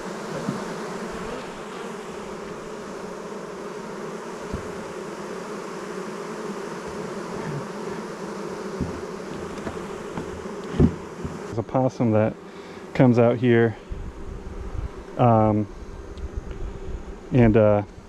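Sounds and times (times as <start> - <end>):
bees buzzing: 0.0 - 18.0
faint knock: 8.8 - 11.4.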